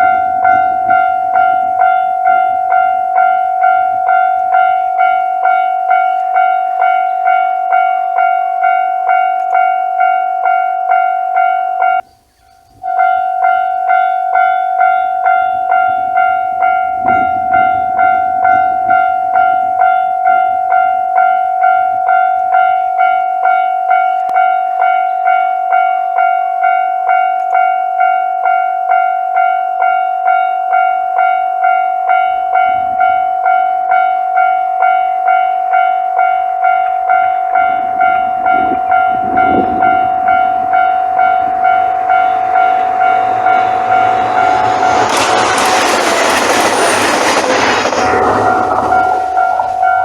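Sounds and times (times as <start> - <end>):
diesel train rumble: 0.0 - 10.9, 12.8 - 23.0, 32.0 - 50.0
level-crossing warning bell ringing: 0.0 - 50.0.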